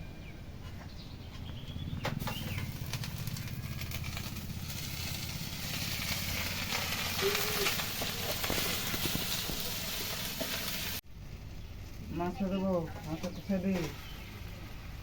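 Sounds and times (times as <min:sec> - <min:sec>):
low steady rumble: 0:00.0 - 0:07.2, 0:07.8 - 0:13.2
onions sizzling in hot oil: 0:02.2 - 0:11.0.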